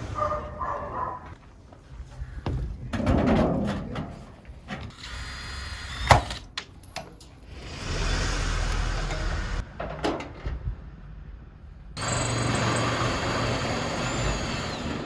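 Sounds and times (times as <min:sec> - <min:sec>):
renovation knocks and clatter: 0:02.4 - 0:05.0.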